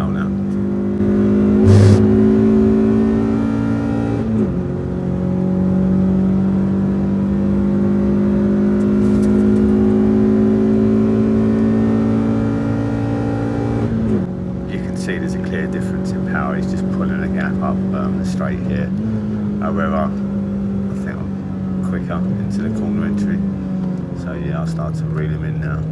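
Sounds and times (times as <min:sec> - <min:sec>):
car engine at full throttle: 0:00.7 - 0:08.9
loud thump: 0:01.6 - 0:02.4.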